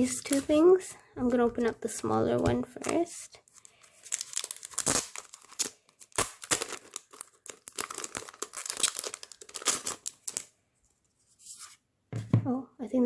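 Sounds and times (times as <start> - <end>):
packet wrapping tearing and crinkling: 2.7 - 10.5.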